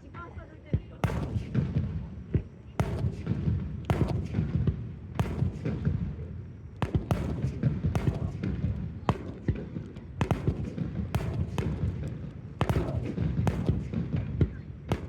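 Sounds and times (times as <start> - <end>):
steady low rumble: 0.0 - 15.0
fireworks bangs and cracks: 1.0 - 15.0.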